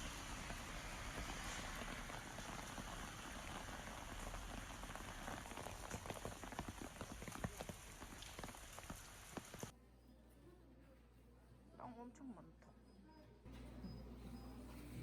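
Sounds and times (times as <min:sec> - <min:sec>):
steady rainfall: 0:00.0 - 0:09.7.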